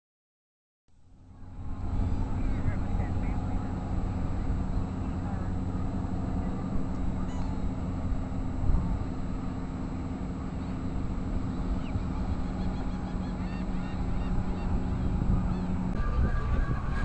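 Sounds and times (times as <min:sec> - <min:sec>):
low drone: 0:00.9 - 0:17.0
wind: 0:00.9 - 0:17.0
faint bird calls: 0:07.2 - 0:07.6, 0:11.5 - 0:16.6.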